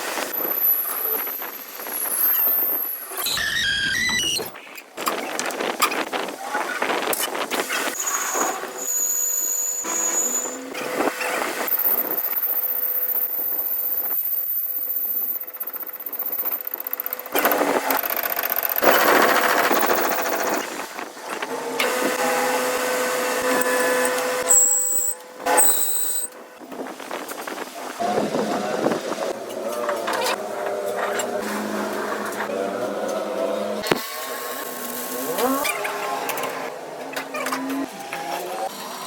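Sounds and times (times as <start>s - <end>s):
workshop power tools whining: 7.9s - 26.6s.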